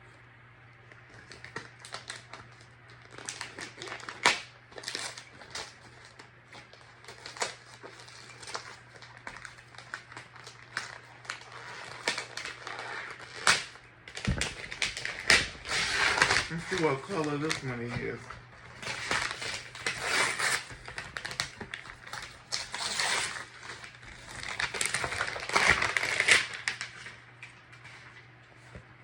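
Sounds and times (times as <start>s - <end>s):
faint low hum: 0.0s - 29.0s
paper and tape crinkling: 0.9s - 28.2s.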